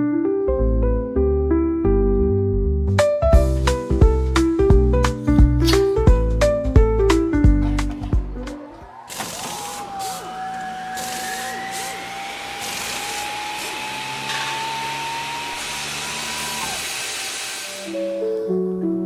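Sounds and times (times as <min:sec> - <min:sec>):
small electric tool motor whining: 0:09.1 - 0:18.4.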